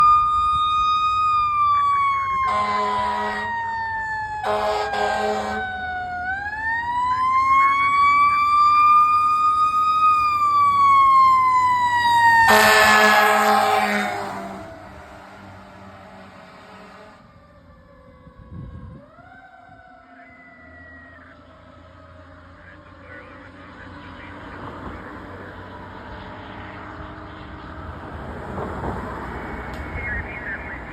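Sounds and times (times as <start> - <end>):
fire engine siren wailing: 0.0 - 30.9
air horn blasts: 2.5 - 3.6, 4.4 - 5.7, 12.4 - 15.4, 16.1 - 17.3.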